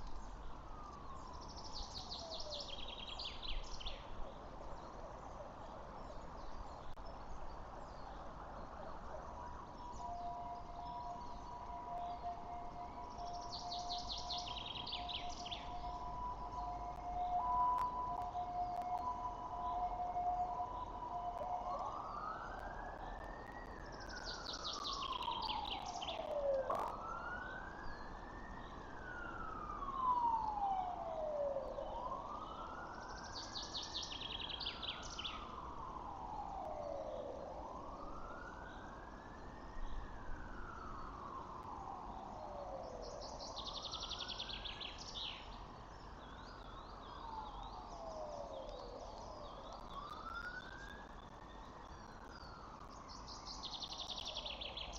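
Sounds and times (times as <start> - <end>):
siren wailing: 9.9 - 33.2, 34.0 - 38.8, 46.5 - 52.8.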